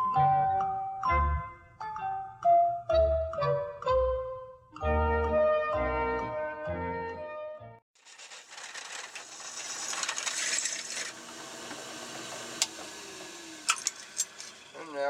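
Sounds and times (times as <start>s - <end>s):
drill press grinding into steel: 8.0s - 15.0s.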